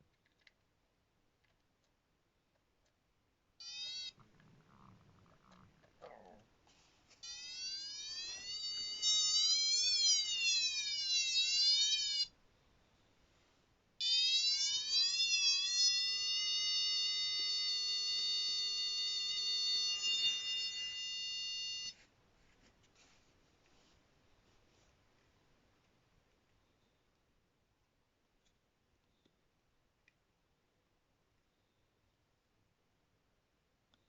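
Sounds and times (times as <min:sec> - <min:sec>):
cable finder buzzy signal tone: 0:03.6 - 0:04.2, 0:07.2 - 0:12.3, 0:14.0 - 0:22.0.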